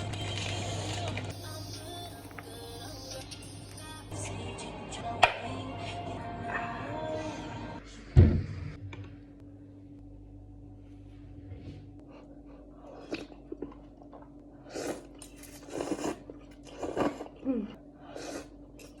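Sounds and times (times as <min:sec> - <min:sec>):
faint steady hum: 0:00.0 - 0:19.0
person chewing noodles: 0:12.2 - 0:19.0.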